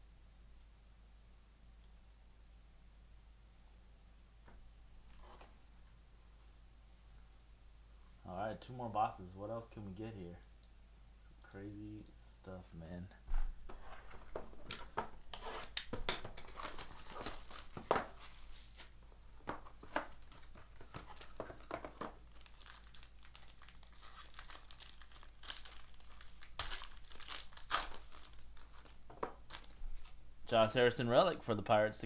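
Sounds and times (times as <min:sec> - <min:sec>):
wrapping torn and crinkled: 0:16.4 - 0:30.2.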